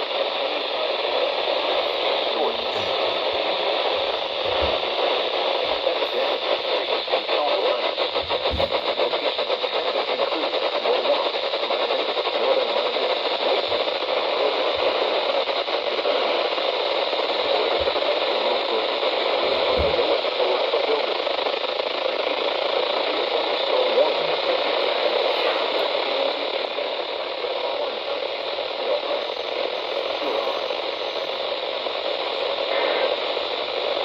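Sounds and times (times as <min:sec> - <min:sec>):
radio static hiss: 0:00.0 - 0:34.0
soft low thumps: 0:02.6 - 0:06.0, 0:08.0 - 0:09.1.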